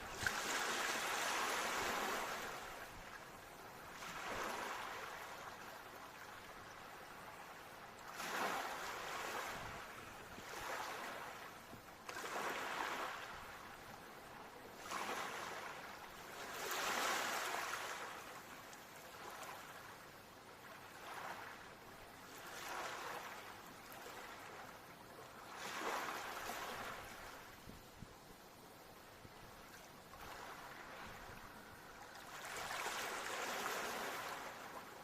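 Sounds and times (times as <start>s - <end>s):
ocean waves washing in: 0.0s - 2.9s.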